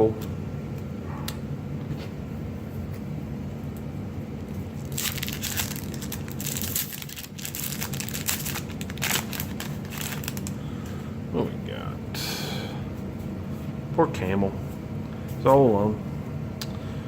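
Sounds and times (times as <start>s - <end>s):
foil wrapper crinkling and tearing: 4.7s - 10.6s.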